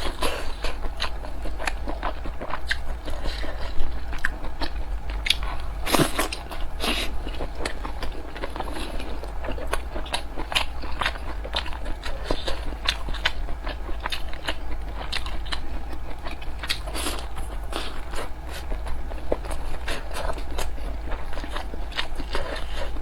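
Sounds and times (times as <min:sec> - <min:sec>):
close chewing with mouth clicks: 0:00.0 - 0:23.0.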